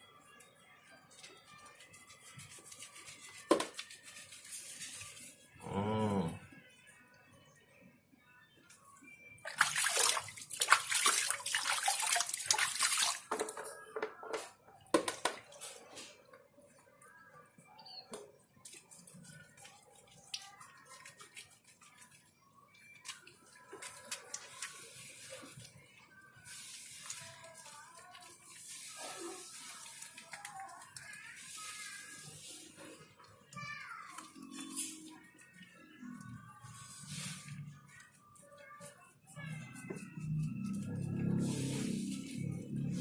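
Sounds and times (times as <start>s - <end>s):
water pouring into bath: 9.4s - 13.4s
small splashes and knocks: 9.4s - 13.7s.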